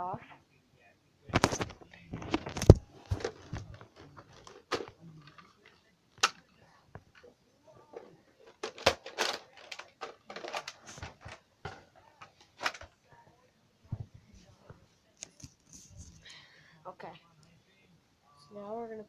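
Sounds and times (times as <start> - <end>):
plastic clicks and clacks: 1.4 - 7.3, 8.0 - 13.0.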